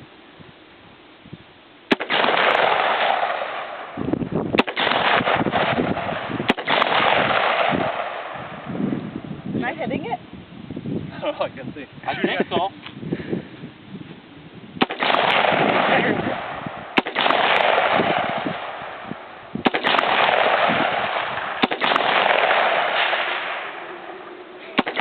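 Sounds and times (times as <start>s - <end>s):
rifle shots: 1.9s - 8.7s, 14.8s - 24.0s, 24.7s - 25.0s.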